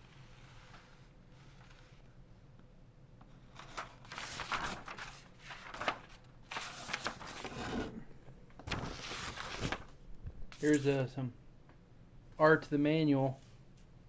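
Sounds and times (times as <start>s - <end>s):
paper pages rustling: 3.4s - 8.0s, 8.6s - 11.0s.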